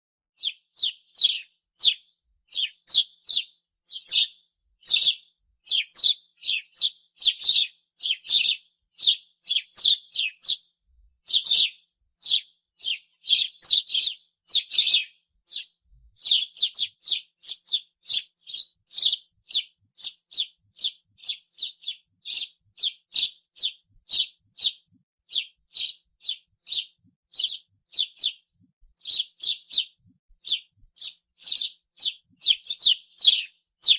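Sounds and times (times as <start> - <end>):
sparrow cheeping: 0.4 - 33.9.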